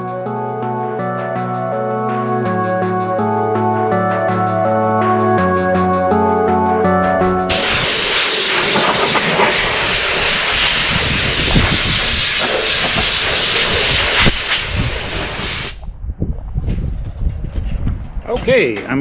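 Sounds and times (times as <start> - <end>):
sander hissing: 7.3 - 15.8.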